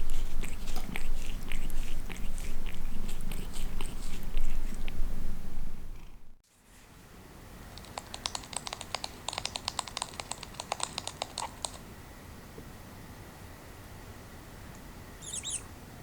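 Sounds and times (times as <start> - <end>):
light clicks and taps: 7.7 - 11.8.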